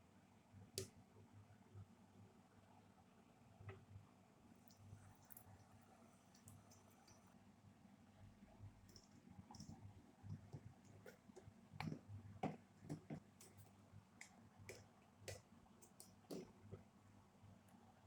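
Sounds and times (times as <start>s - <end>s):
faint irregular clicks and taps: 0.8s - 1.0s, 8.8s - 16.9s.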